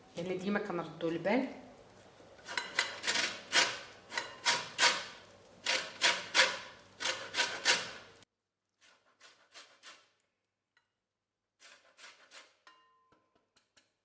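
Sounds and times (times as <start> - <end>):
lemon peel scraping on grater: 2.4 - 8.1, 8.8 - 10.2, 11.6 - 12.6.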